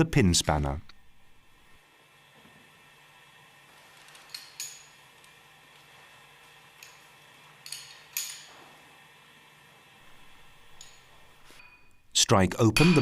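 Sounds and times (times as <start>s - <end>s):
steel tools clinking: 4.0s - 5.1s, 6.7s - 8.6s, 10.6s - 12.1s.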